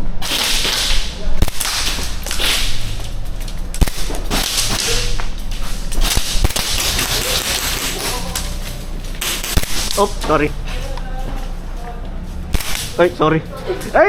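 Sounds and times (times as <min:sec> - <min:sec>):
hissing noise rushes: 0:00.0 - 0:08.4
airsoft gun snaps: 0:09.2 - 0:10.0, 0:12.5 - 0:12.9.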